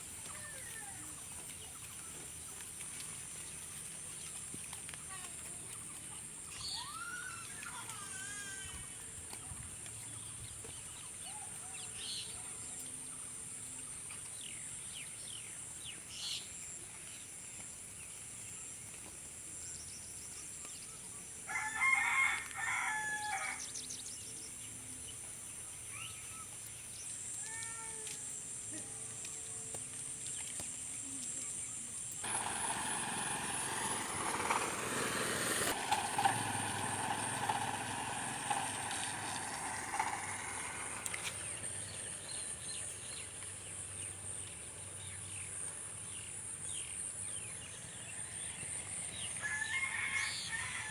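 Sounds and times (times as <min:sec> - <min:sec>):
small birds chirping: 0:00.0 - 0:21.4
rooster crowing: 0:21.5 - 0:23.6, 0:49.4 - 0:50.9
rough steady noise: 0:31.8 - 0:44.4.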